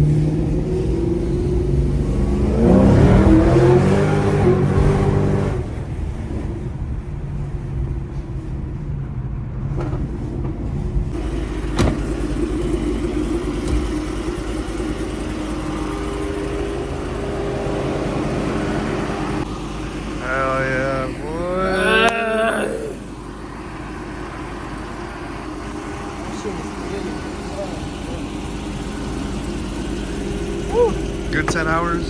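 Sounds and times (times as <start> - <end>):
car engine revving and droning: 0.0 - 32.0.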